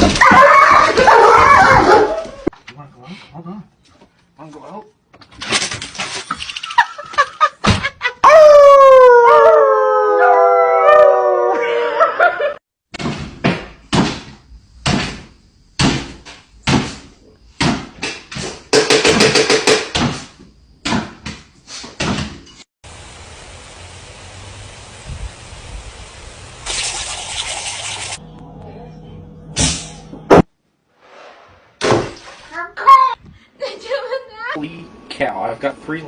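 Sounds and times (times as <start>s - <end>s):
dog howling: 0.2s - 2.5s, 8.2s - 12.4s.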